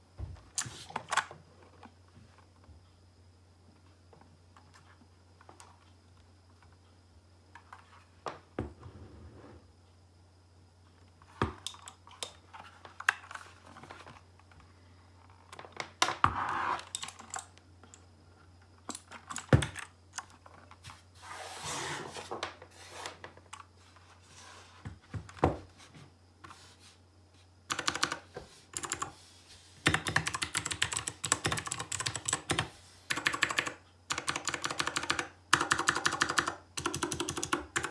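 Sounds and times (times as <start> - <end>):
mechanical keyboard typing: 16.8 - 17.5, 18.9 - 20.3, 27.7 - 29.2, 29.8 - 37.9.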